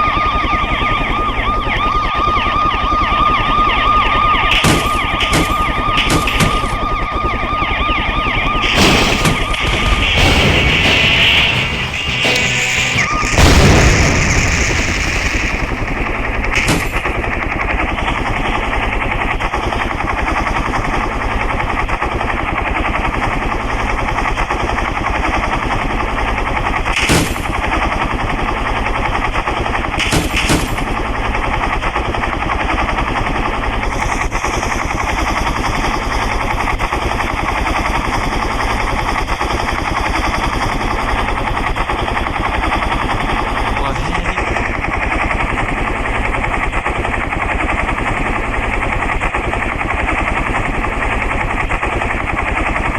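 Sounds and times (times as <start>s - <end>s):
loud hit: 8.6s - 16.9s
sharp cracks: 8.6s - 17.1s
helicopter rotor chopping: 8.6s - 17.2s.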